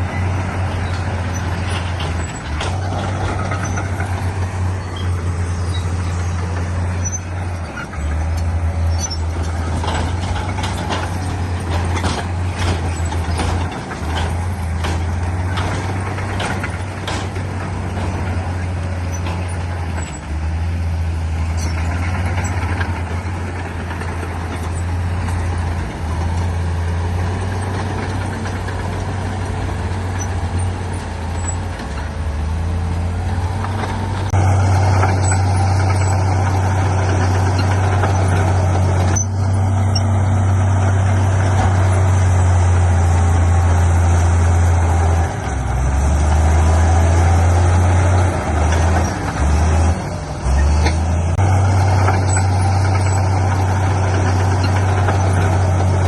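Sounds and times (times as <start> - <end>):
diesel engine droning: 0.0 - 56.0.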